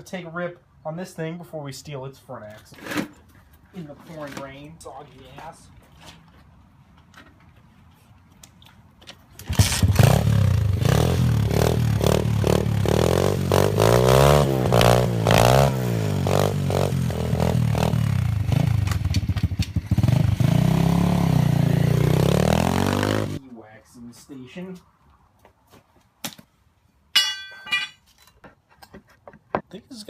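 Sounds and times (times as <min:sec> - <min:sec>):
small gasoline engine revving: 0:09.4 - 0:23.4.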